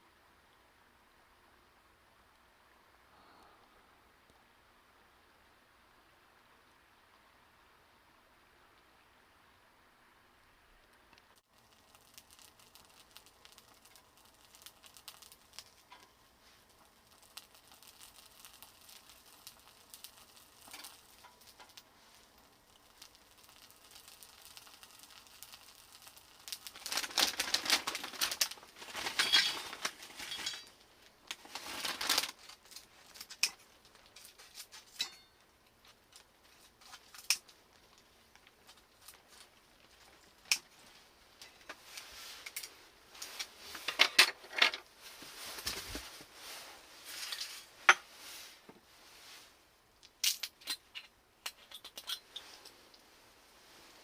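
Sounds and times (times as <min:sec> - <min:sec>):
rustling or crinkling: 0:10.8 - 0:54.0.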